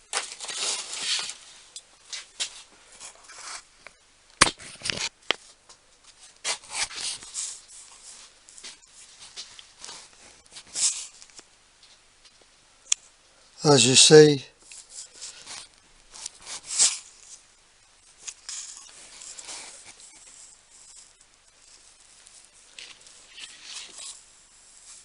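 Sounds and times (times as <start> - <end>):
containers rustling and scraping: 0.1 - 3.7, 18.0 - 25.0.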